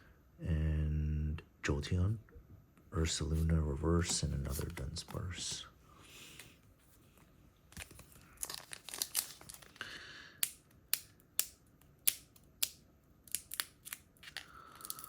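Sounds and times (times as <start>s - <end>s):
foil pack rustle: 7.7s - 10.0s
trading cards snapping and crinkling: 7.7s - 15.0s.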